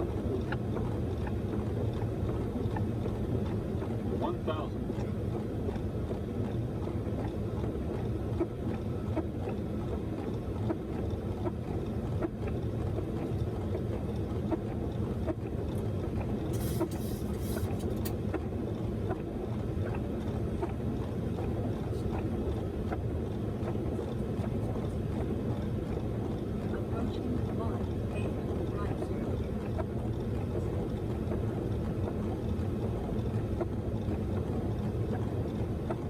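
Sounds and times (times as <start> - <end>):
cockpit airflow and engine roar: 0.0 - 36.0
faint ticks: 5.7 - 36.0.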